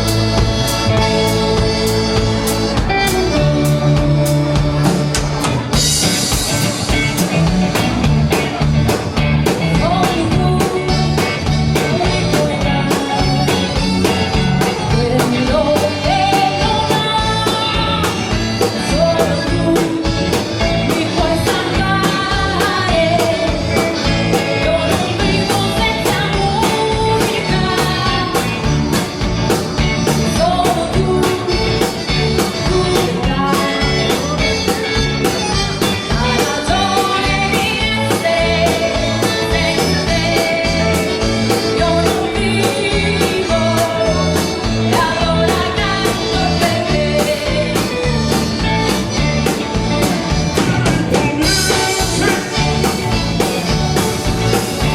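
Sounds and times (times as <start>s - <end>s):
band playing upbeat dance music: 0.0s - 54.9s.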